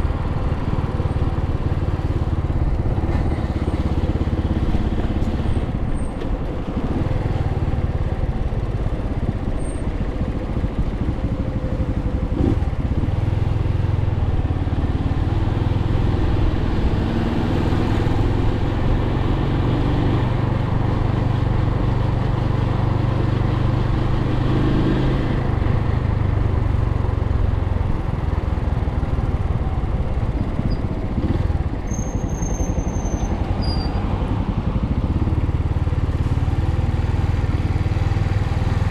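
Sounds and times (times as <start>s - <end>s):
motorcycle engine running: 0.0s - 38.9s
wind and road noise: 0.0s - 38.9s.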